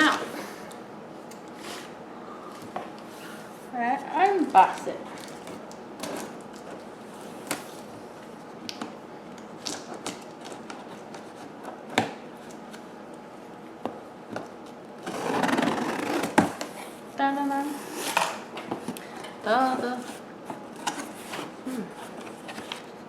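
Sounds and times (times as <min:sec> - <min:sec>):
cardboard scraping rustle: 0:15.0 - 0:16.7, 0:19.8 - 0:22.9.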